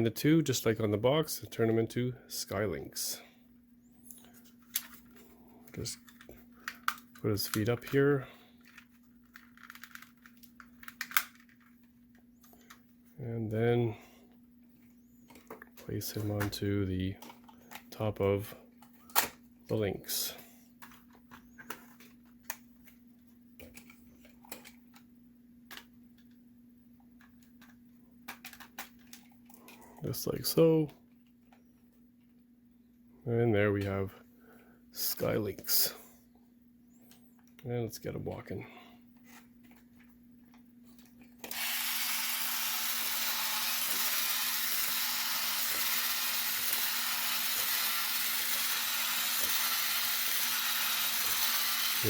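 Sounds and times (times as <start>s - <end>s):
faint steady hum: 0.0s - 52.0s
plastic toy parts clicking: 8.7s - 11.7s, 27.6s - 29.3s
toy motor and gears whirring: 41.4s - 52.0s.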